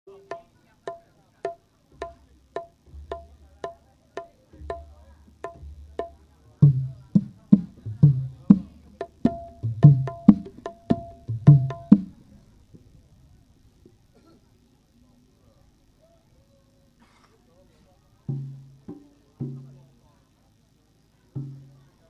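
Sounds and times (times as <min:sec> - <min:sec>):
deep hand drum: 0:02.0 - 0:03.8, 0:04.6 - 0:12.2.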